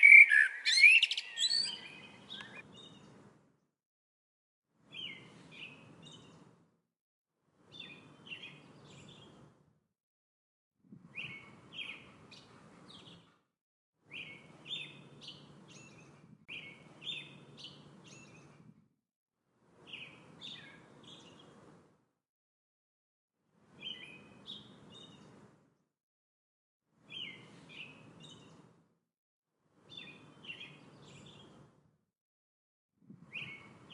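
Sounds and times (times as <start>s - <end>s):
songbird chirping: 0.0s - 3.2s, 19.8s - 21.6s, 29.9s - 31.6s
faint outdoor background noise: 0.0s - 3.6s, 19.6s - 22.0s.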